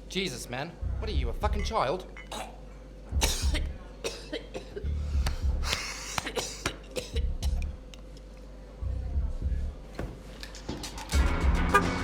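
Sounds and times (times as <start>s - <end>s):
man coughing and choking: 2.2s - 4.9s, 5.7s - 7.7s.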